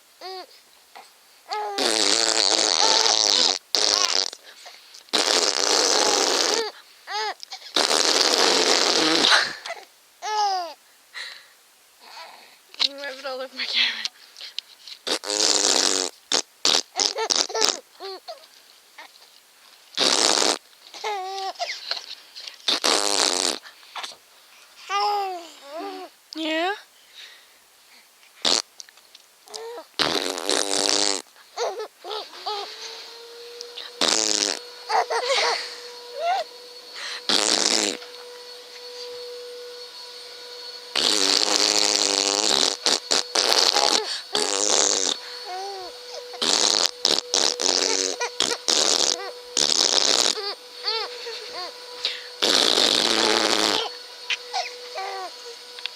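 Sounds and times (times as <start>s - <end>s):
baby vocalizing: 0.2s - 10.8s, 15.0s - 18.4s, 20.0s - 22.1s, 24.8s - 26.1s, 29.5s - 32.9s, 33.8s - 35.6s, 41.0s - 55.3s
blown raspberries: 1.5s - 9.9s, 29.5s - 38.1s, 40.9s - 55.6s
fart sounds: 1.6s - 4.5s, 5.1s - 6.8s, 7.7s - 9.8s, 15.0s - 17.8s, 20.0s - 20.6s, 22.7s - 24.2s, 28.4s - 28.7s, 29.5s - 31.3s, 33.8s - 35.6s, 36.4s - 38.1s, 40.9s - 51.1s, 52.0s - 54.7s.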